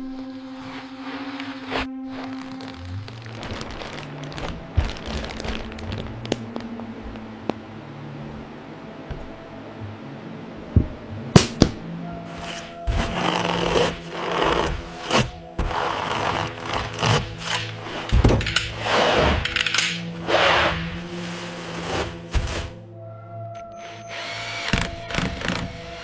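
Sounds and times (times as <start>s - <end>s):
scraping strokes: 12.2s - 22.8s.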